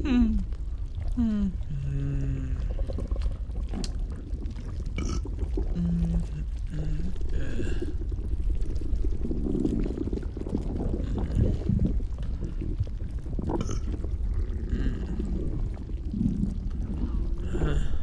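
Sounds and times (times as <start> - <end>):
deep rumble: 0.0 - 18.0
stomach gurgling: 0.0 - 18.0
squeaky gurgles: 4.9 - 8.0.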